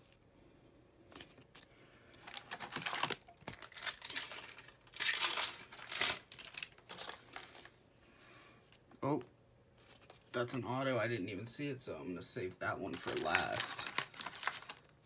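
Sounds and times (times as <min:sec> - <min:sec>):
wrapper crinkling: 0:01.6 - 0:07.8, 0:12.9 - 0:15.0.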